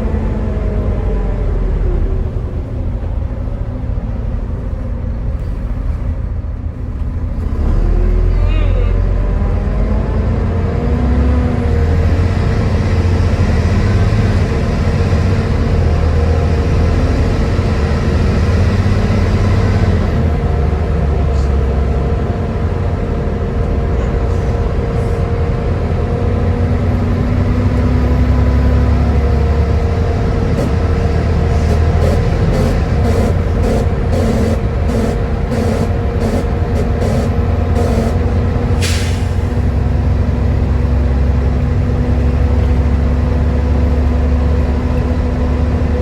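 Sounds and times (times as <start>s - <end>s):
bus engine rumble and whine: 0.0s - 46.0s
hiss: 30.6s - 38.2s, 38.8s - 39.4s.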